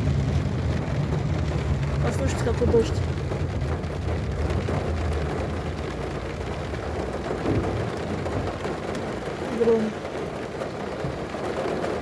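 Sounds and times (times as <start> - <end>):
low rumble: 0.0 - 9.4
heavy rain on car roof: 0.0 - 12.0.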